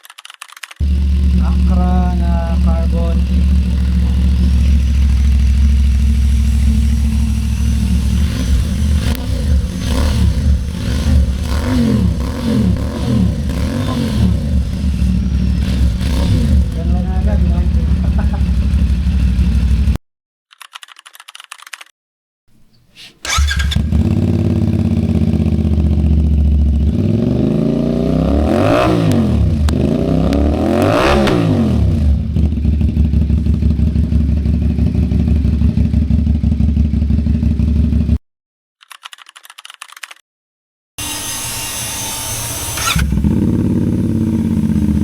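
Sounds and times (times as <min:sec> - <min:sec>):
engine revving: 0:00.8 - 0:20.0, 0:23.3 - 0:37.8, 0:41.0 - 0:45.0
motorcycle engine idling: 0:00.8 - 0:20.0, 0:23.4 - 0:28.1, 0:31.9 - 0:38.2, 0:43.0 - 0:45.0.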